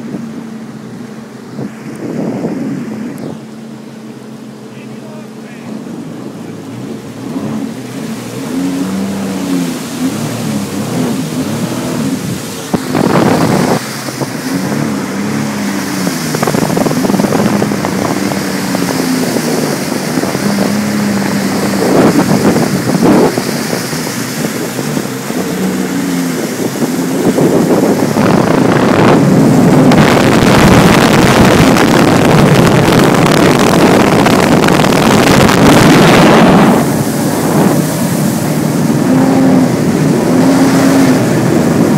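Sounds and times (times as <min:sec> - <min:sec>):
wind and spray rushing: 0:00.0 - 0:04.5, 0:05.5 - 0:41.9
watercraft engine: 0:00.0 - 0:41.9.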